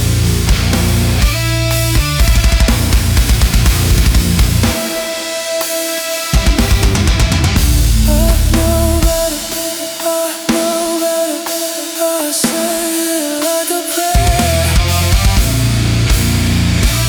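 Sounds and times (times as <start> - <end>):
guitars: 0.0 - 9.7, 14.2 - 17.0
drum kit: 0.0 - 17.0.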